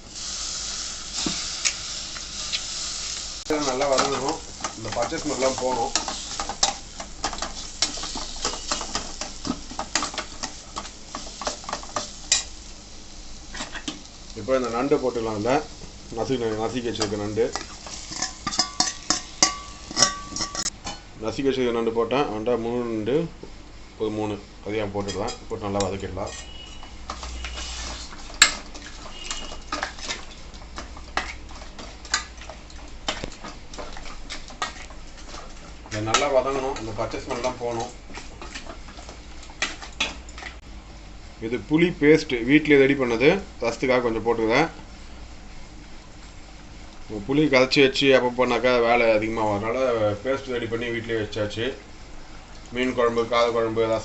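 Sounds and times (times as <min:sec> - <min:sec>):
food sizzling in a pan: 0:00.0 - 0:21.1, 0:22.8 - 0:54.0
utensil scraping and knocking pan: 0:17.0 - 0:20.7, 0:26.2 - 0:40.2.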